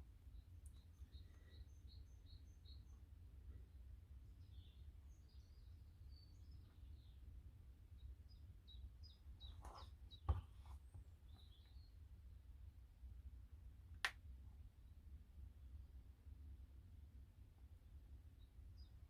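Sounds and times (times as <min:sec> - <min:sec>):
faint bird chirps: 0:00.0 - 0:12.2, 0:17.9 - 0:19.0.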